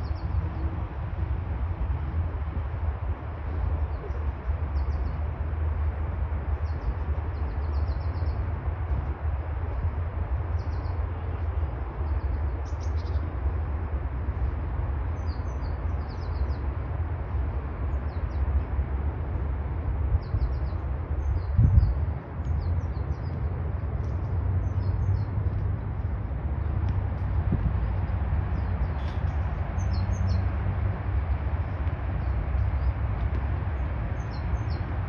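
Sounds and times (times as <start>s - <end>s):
small birds chirping: 0.0s - 0.6s, 3.8s - 5.3s, 6.5s - 8.5s, 10.5s - 13.4s, 15.1s - 16.8s, 20.2s - 35.0s
steady low rumble: 0.0s - 35.0s.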